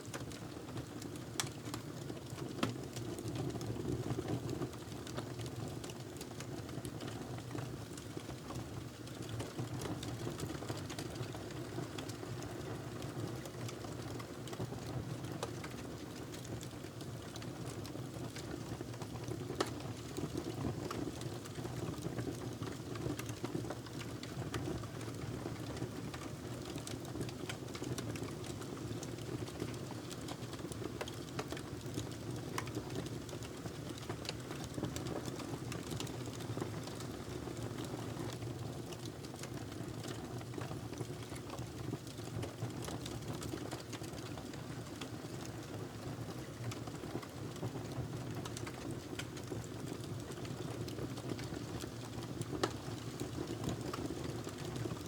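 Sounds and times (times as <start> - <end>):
fire crackling and popping: 21.1 - 45.7, 46.3 - 55.0.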